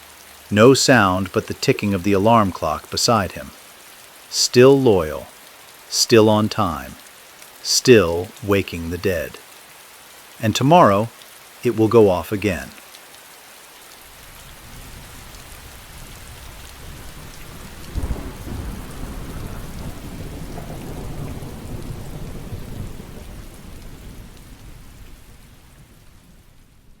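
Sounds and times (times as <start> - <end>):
steady rain: 0.0 - 27.0
low rumble of thunder: 14.1 - 27.0.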